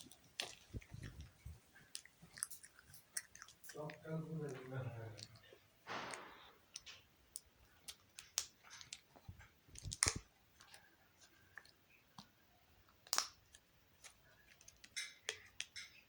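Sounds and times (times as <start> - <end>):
chewing soft candy: 0.0 - 16.0
wet mouth clicks and smacks: 9.8 - 10.8, 13.0 - 16.0.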